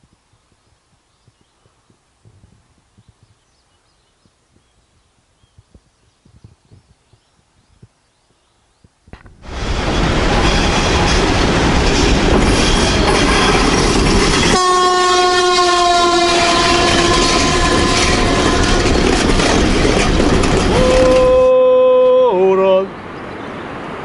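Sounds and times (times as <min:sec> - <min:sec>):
train rumble and wheel clatter: 0:09.2 - 0:21.6
train horn: 0:10.3 - 0:13.7, 0:14.5 - 0:19.0.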